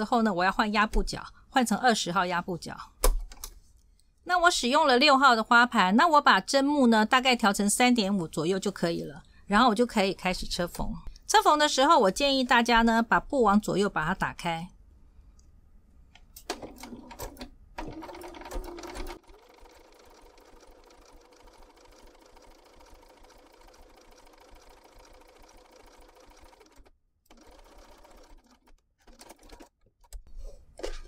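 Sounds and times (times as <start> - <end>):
sewing machine stitching: 16.5 - 29.7.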